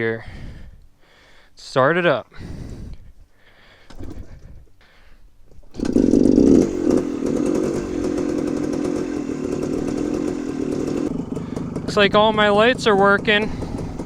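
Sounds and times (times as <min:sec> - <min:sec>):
two-stroke motorcycle engine starting: 0:05.6 - 0:14.0.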